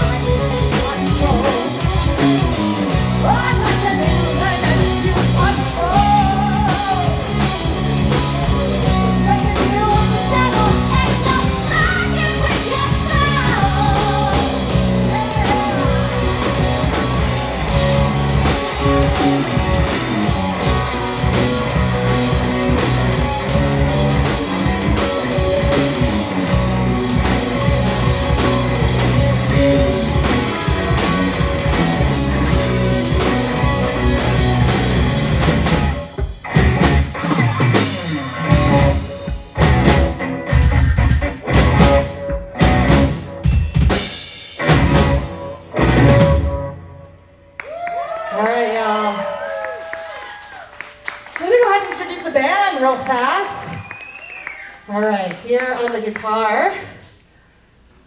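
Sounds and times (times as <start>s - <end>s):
live rock band playing: 0.0s - 47.2s
woman singing: 3.2s - 7.6s, 8.9s - 17.2s.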